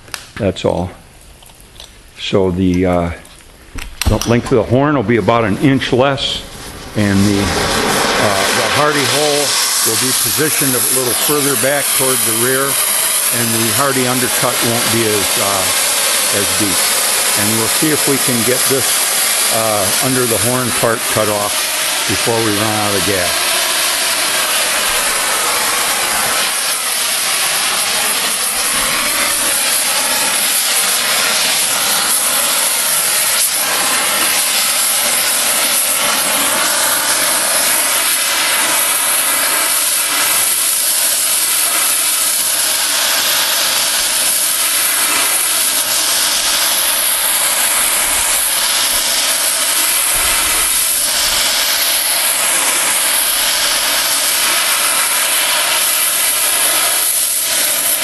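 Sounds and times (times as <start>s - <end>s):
cutting torch hissing: 0.0s - 58.0s.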